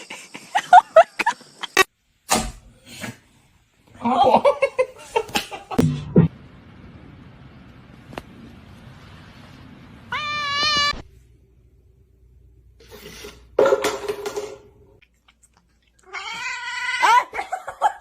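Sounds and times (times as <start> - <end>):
cat meowing: 10.1 - 11.1, 16.0 - 17.2.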